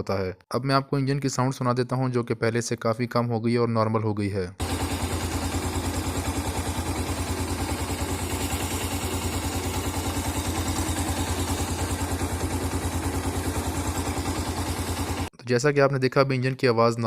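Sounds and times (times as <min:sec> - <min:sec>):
motorcycle engine idling: 0:04.6 - 0:15.3.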